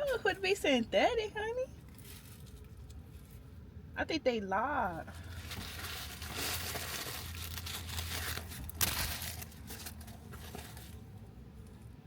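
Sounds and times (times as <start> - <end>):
wig and packaging rustling: 1.8 - 3.5, 5.1 - 11.2
sharp crackle: 5.4 - 10.1.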